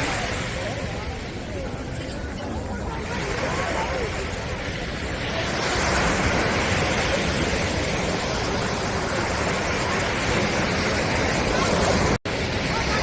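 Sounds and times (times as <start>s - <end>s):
surf breaking on beach: 0.0s - 13.0s.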